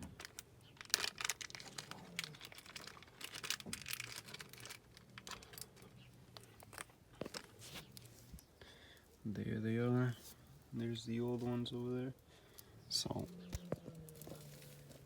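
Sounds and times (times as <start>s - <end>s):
packaging torn and crinkled: 0.0s - 5.8s.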